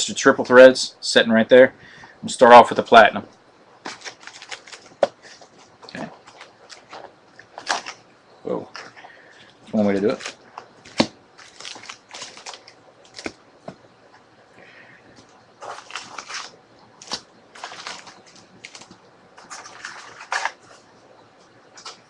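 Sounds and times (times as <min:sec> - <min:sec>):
packaging rustling and crinkling: 0:03.8 - 0:08.0, 0:08.7 - 0:13.8, 0:15.2 - 0:20.9, 0:21.7 - 0:22.0.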